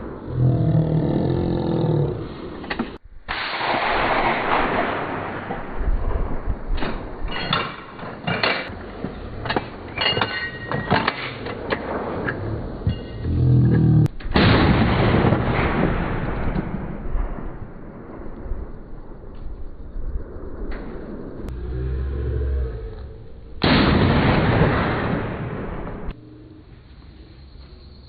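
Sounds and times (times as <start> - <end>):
outdoor noise: 0.0 - 28.0
gunshots: 3.3 - 7.2, 14.2 - 18.3, 23.6 - 26.2
low drone: 11.4 - 14.2, 18.3 - 23.7.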